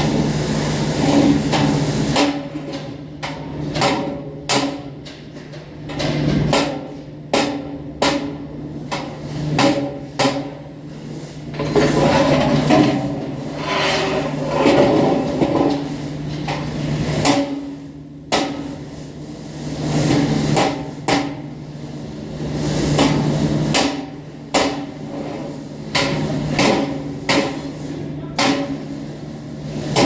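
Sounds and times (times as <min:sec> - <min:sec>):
scraping or rubbing: 0:13.4 - 0:15.4.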